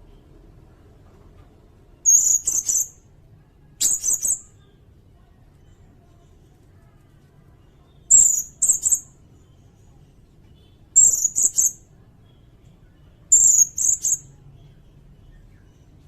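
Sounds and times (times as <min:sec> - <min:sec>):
parrot shrill calls: 0:02.0 - 0:03.0, 0:08.1 - 0:09.1, 0:11.0 - 0:11.8, 0:13.3 - 0:14.2.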